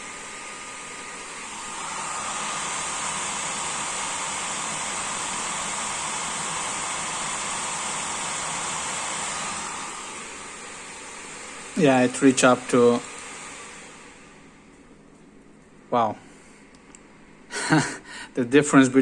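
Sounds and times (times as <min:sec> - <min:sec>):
graphics card fan rushing hiss: 0:00.0 - 0:14.6.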